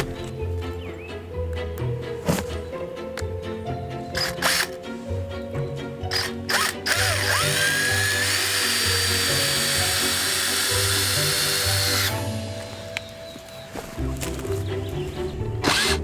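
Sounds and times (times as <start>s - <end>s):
background music: 0.0s - 16.0s
power tool whining: 4.2s - 4.8s, 6.1s - 12.2s, 15.6s - 16.0s.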